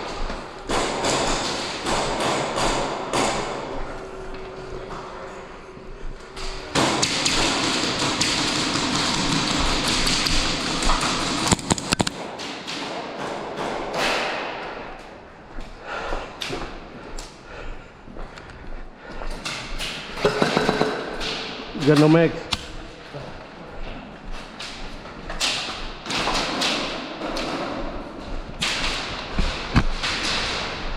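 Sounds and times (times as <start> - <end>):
dense loud noise: 0.0 - 12.2
airsoft guns firing clicks: 6.8 - 14.5.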